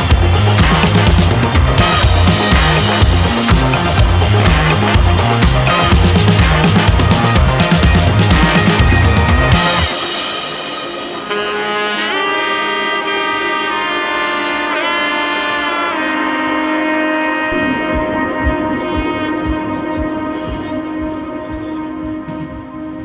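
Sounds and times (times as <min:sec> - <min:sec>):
steady low beat: 0:00.0 - 0:11.9, 0:17.4 - 0:23.0
held chords: 0:00.0 - 0:23.0
melodic lead with sliding notes: 0:00.0 - 0:23.0.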